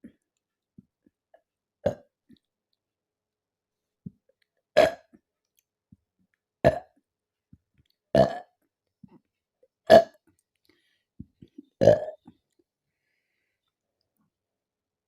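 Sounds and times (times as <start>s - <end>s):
woman burping: 11.8s - 12.2s.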